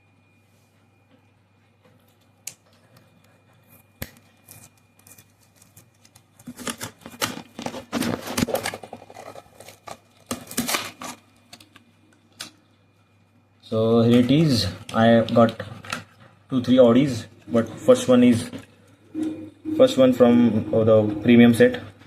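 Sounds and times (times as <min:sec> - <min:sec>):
plastic crackling: 0:02.0 - 0:12.8, 0:14.1 - 0:16.6
card rustling: 0:02.7 - 0:12.6, 0:14.1 - 0:19.4
packaging clicks: 0:04.0 - 0:12.6.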